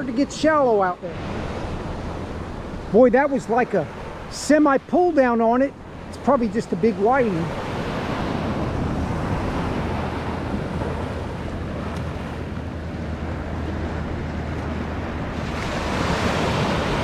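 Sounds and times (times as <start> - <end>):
ocean surf washing ashore: 0.0 - 17.0
wind on microphone: 7.0 - 17.0.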